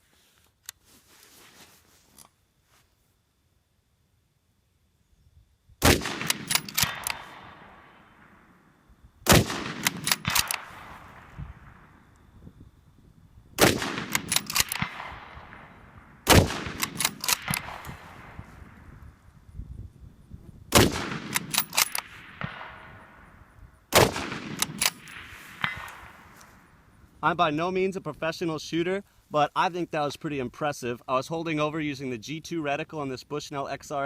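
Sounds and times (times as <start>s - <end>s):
gunshot echo: 5.8s - 8.5s, 9.2s - 12.0s, 13.6s - 18.7s, 20.7s - 23.3s, 23.9s - 26.7s
rifle shots: 5.8s - 12.1s, 13.6s - 18.9s, 20.7s - 27.0s
rifle bolt clicks: 5.9s - 7.4s, 9.6s - 10.8s, 13.7s - 15.1s, 16.3s - 18.0s, 21.0s - 22.6s, 24.0s - 26.6s.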